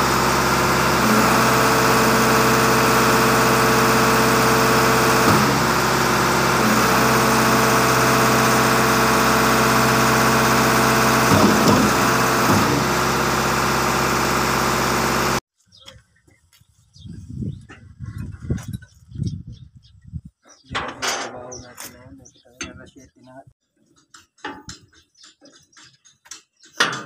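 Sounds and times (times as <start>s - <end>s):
concrete pump diesel engine: 0.0s - 15.4s.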